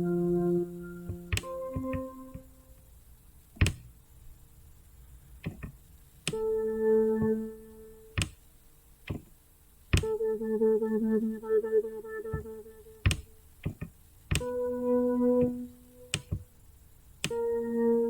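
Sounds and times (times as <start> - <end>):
sharp single clicks: 5.4 - 6.5, 15.4 - 16.5.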